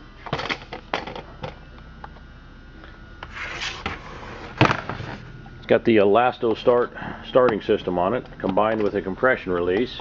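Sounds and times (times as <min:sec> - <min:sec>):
rubbing scrape: 0:03.3 - 0:05.2.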